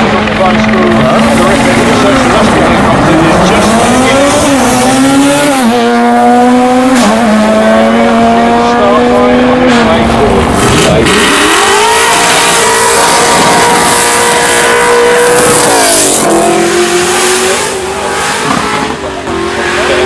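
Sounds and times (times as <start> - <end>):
car engine revving: 0.0 - 20.0.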